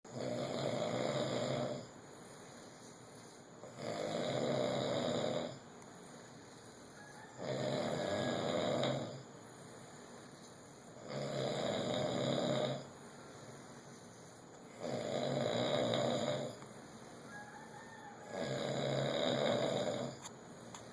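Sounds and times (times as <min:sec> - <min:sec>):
loud snoring: 0:00.1 - 0:01.9, 0:03.6 - 0:05.6, 0:07.3 - 0:09.3, 0:11.0 - 0:12.9, 0:14.7 - 0:16.6, 0:18.1 - 0:20.3
quiet breathing: 0:00.1 - 0:20.9.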